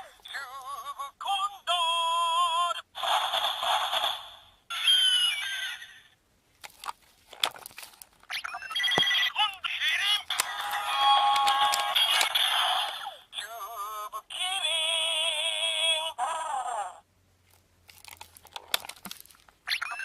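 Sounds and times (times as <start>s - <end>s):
sharp plastic clicks: 10.2s - 12.4s.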